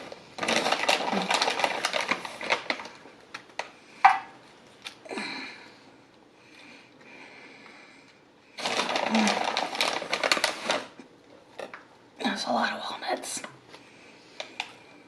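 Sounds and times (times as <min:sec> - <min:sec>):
nuts pouring and rattling: 0:00.4 - 0:02.9, 0:08.6 - 0:11.0.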